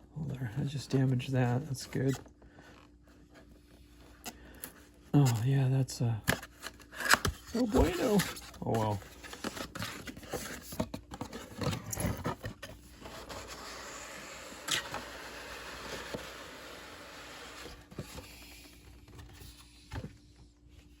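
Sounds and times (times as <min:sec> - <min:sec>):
cardboard packaging scraping: 0:06.4 - 0:20.1.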